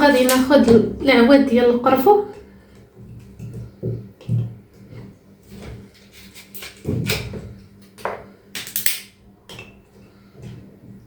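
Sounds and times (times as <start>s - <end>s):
kitchen items knocking and rustling: 3.0s - 9.8s.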